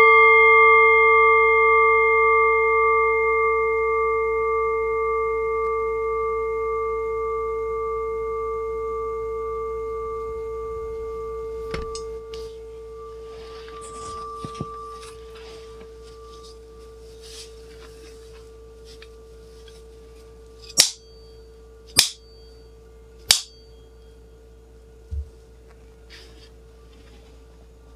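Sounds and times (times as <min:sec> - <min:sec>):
sharp clicks with high ring: 0:20.6 - 0:22.6, 0:23.3 - 0:24.0.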